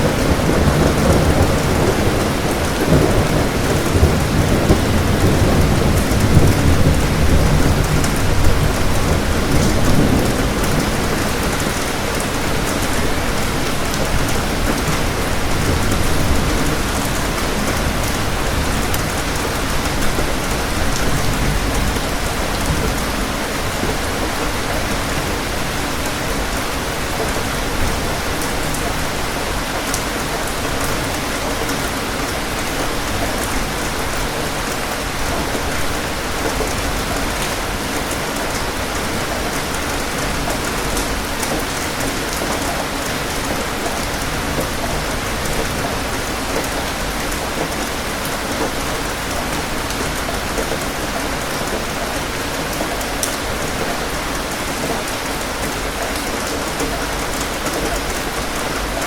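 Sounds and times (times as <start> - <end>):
low roll of thunder: 0.0 - 24.3
steady rain falling: 0.0 - 59.0.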